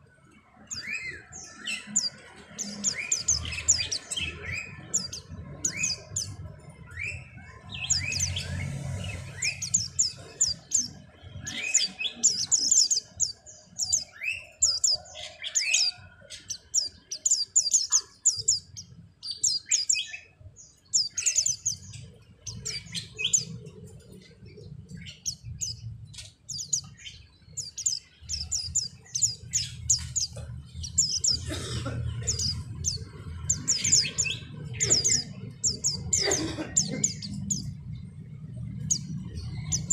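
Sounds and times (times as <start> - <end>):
birds chirping: 0.0 - 39.9
low rumble: 37.2 - 39.9.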